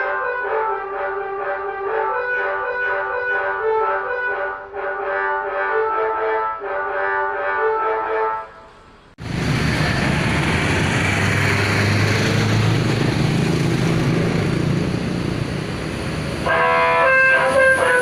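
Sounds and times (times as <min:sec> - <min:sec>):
music: 0:00.0 - 0:08.6
road and traffic noise: 0:00.0 - 0:18.0
bus engine running: 0:08.6 - 0:18.0.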